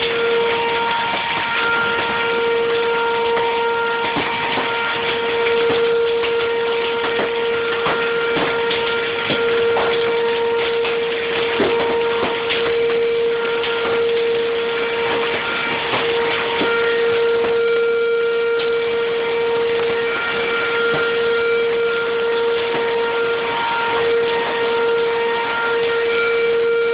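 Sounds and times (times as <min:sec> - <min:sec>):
hail strikes: 0:00.0 - 0:26.9
storm rain: 0:00.0 - 0:26.9
tornado warning siren steady tone: 0:00.0 - 0:26.9.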